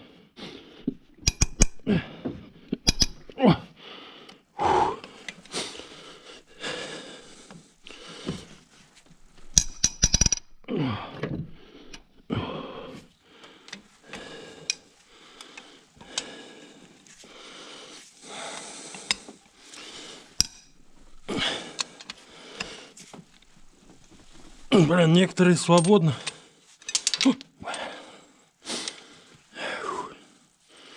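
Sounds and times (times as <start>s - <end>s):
metal tools clinking and knocking: 1.2s - 1.8s, 2.8s - 3.3s, 9.2s - 10.7s, 20.4s - 22.2s, 23.4s - 27.4s
metallic clicks: 1.2s - 1.9s, 2.8s - 3.3s, 9.4s - 10.7s, 20.4s - 22.7s, 25.4s - 27.5s.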